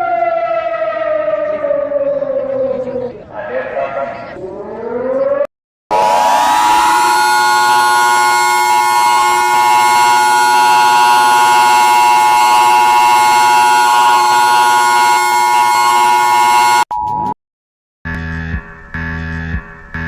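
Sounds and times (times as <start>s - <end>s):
electronic two-note alarm tone: 5.9s - 17.3s.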